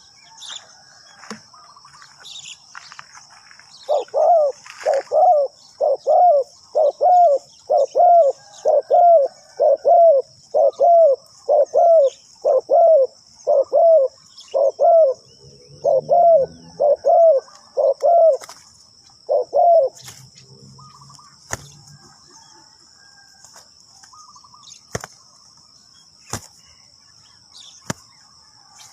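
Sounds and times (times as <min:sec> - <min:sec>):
dove cooing: 0:03.8 - 0:18.6, 0:19.2 - 0:23.2.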